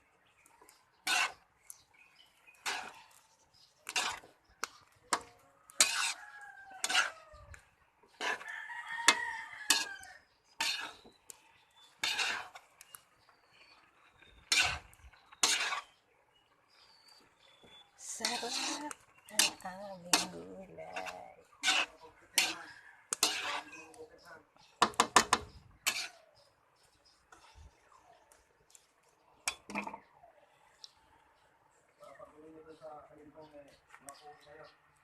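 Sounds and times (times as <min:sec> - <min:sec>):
rooster crowing: 0:05.7 - 0:07.6, 0:08.2 - 0:10.3.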